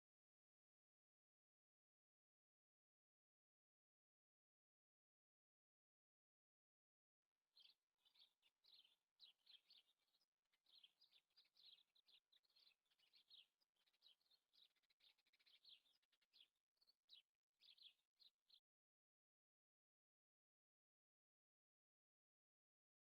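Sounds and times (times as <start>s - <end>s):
faint bird chirping: 7.3s - 19.9s.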